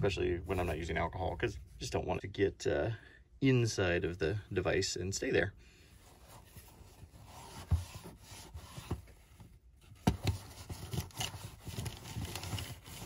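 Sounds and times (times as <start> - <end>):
paper towel rubbing plastic case: 10.0 - 13.0.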